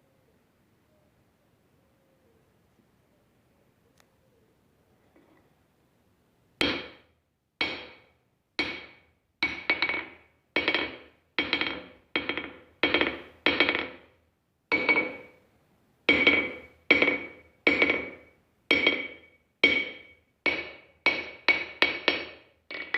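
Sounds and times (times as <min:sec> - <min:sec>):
hammer striking steel anvil: 0:06.6 - 0:07.0, 0:07.6 - 0:14.1, 0:14.7 - 0:15.4, 0:16.1 - 0:22.9.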